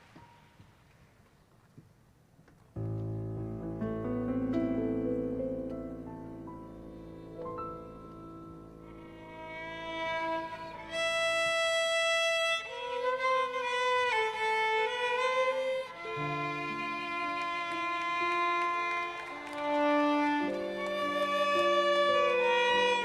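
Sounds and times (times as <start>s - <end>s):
solo violin melody: 5.9s - 23.0s.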